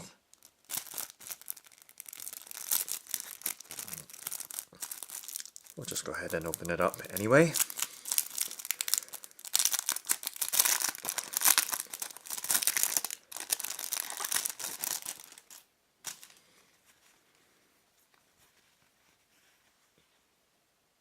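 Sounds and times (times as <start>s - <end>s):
packet crinkling and tearing: 0.3s - 16.4s.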